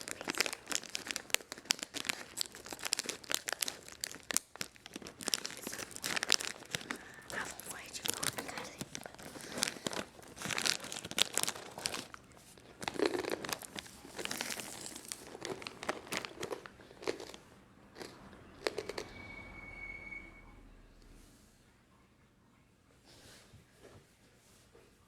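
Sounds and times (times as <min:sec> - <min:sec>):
plastic packaging crinkling: 0:00.0 - 0:17.4
faint high tone: 0:18.4 - 0:21.2.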